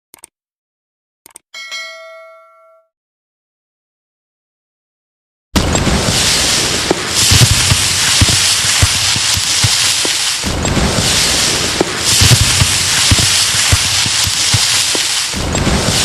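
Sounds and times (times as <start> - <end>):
crackling explosion blast: 5.6 - 16.0
sharp low booms: 5.6 - 16.0.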